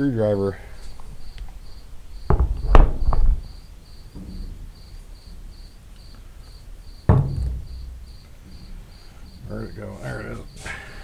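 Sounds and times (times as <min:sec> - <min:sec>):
cricket chirping: 0:00.0 - 0:11.0
tools knocking and clattering: 0:00.8 - 0:11.0.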